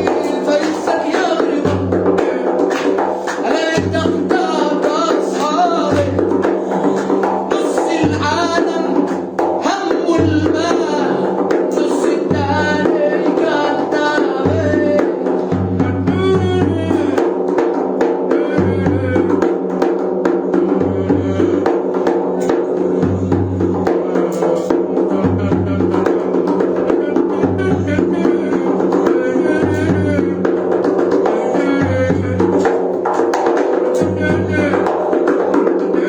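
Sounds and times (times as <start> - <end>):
drums and percussion: 0.0 - 36.0.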